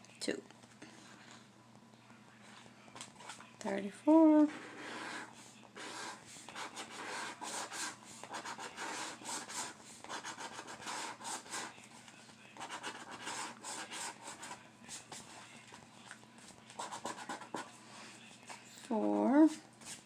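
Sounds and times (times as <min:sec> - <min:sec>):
scratch card being scratched: 0:04.5 - 0:11.7.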